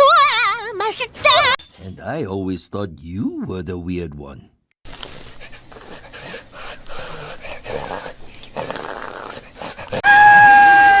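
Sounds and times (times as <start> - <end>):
rabbit snoring: 5.7 - 10.0.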